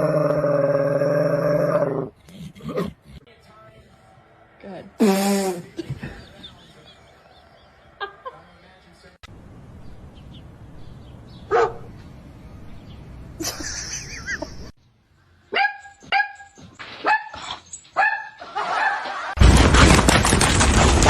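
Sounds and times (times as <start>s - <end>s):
dog barking: 11.5s - 11.9s, 15.5s - 17.4s, 18.0s - 19.0s.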